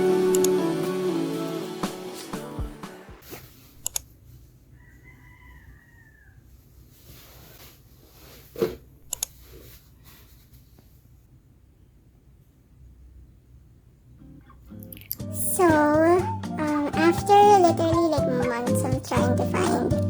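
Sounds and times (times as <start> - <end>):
background music: 0.0 - 3.2, 14.8 - 20.0
distant rooster crow: 4.7 - 6.5.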